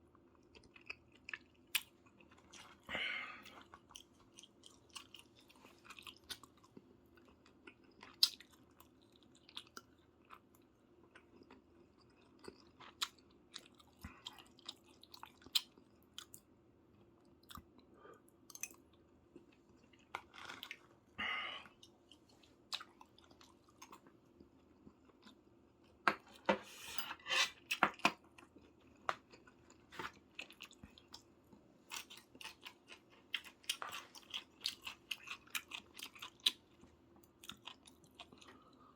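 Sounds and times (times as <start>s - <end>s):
close chewing with wet mouth clicks: 3.5s - 16.4s, 21.8s - 25.4s, 31.9s - 38.6s.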